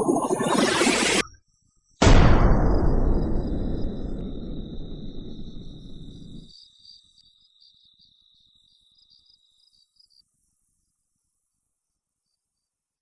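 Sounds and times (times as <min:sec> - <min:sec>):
loud low rumble: 0:02.0 - 0:06.5
crickets chirping faintly: 0:02.6 - 0:13.0.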